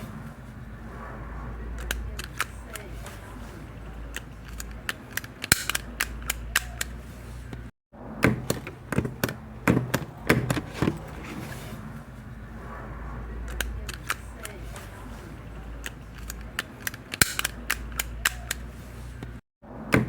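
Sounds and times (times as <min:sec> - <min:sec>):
stapler clicking: 0:04.4 - 0:06.9, 0:16.2 - 0:18.6.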